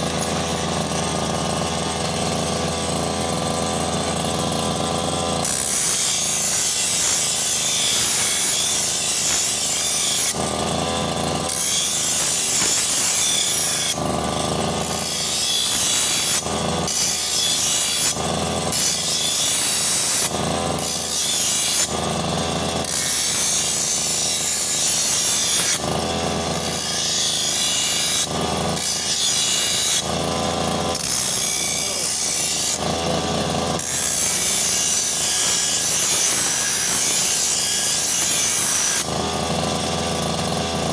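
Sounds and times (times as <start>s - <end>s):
brush cutter engine surging: 0.0s - 40.9s.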